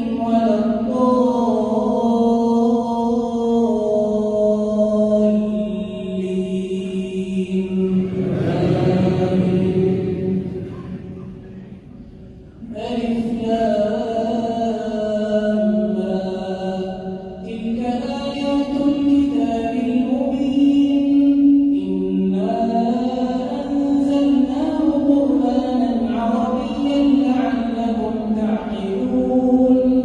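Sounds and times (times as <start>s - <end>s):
man chanting melodic recitation: 22.5s - 30.0s.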